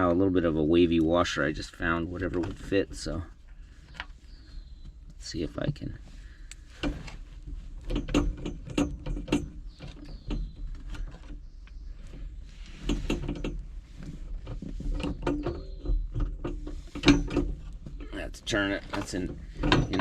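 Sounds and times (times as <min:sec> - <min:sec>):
faint short squeaks: 0:14.8 - 0:20.0.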